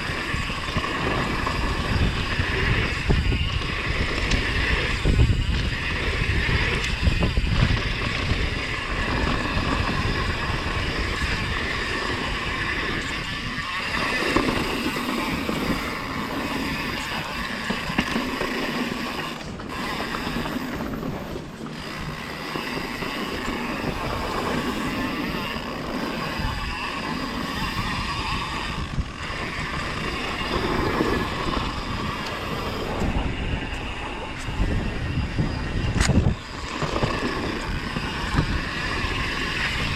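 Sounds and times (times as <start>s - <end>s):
bike rolling and rattling: 0.0s - 39.9s
wind on microphone: 0.0s - 39.9s.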